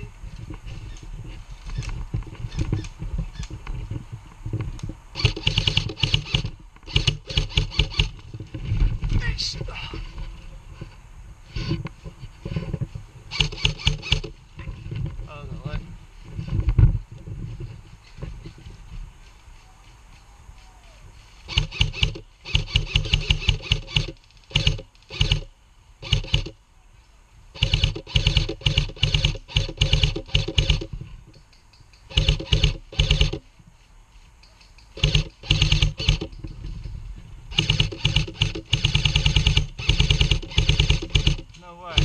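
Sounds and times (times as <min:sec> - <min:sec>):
airsoft gun firing bursts: 0:05.2 - 0:08.2, 0:13.3 - 0:14.4, 0:21.5 - 0:26.6, 0:27.6 - 0:30.9, 0:32.1 - 0:33.4, 0:34.9 - 0:36.4, 0:37.5 - 0:42.0.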